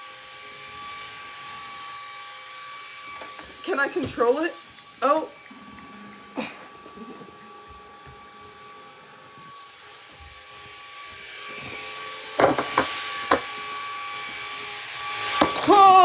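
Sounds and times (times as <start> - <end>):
propeller motor whirring: 0.4 - 16.0.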